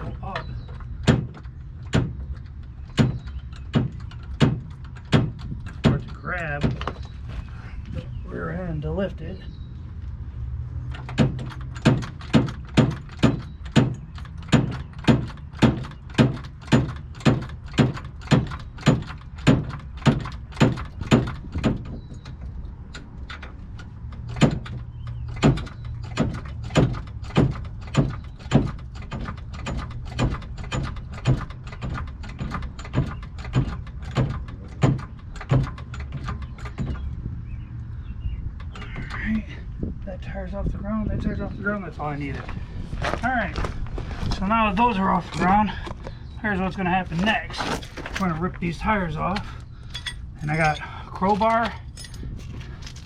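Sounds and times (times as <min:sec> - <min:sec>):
car jack clunking: 0:00.2 - 0:07.4, 0:10.9 - 0:39.6.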